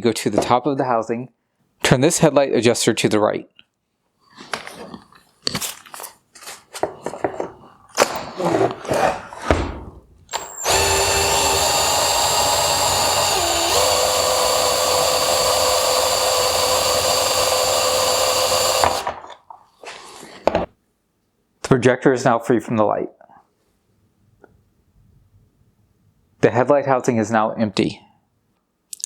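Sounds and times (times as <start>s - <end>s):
power drill running: 10.3s - 19.2s.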